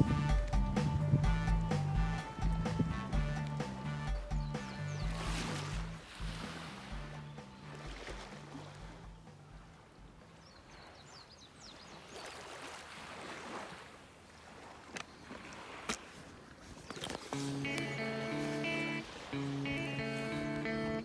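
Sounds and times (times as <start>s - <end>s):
background music: 0.0s - 9.7s, 17.4s - 21.0s
quiet rush of waterside noise: 0.0s - 21.0s
high chirps: 17.3s - 21.0s.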